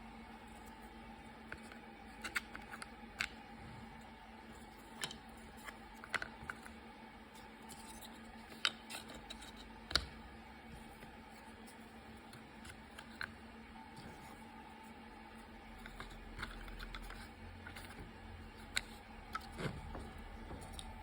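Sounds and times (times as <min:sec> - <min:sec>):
faint steady hum: 0:00.0 - 0:21.0.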